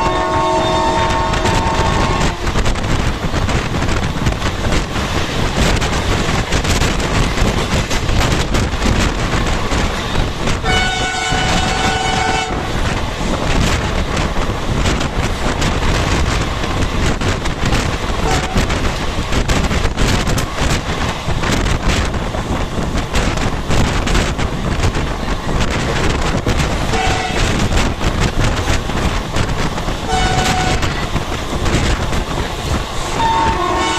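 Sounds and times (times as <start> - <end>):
locomotive horn: 0.0 - 2.5, 10.6 - 12.8, 18.2 - 18.6, 26.9 - 27.6, 30.1 - 31.2, 33.1 - 33.9
rail clatter: 0.0 - 33.9
train rumble: 0.0 - 33.9.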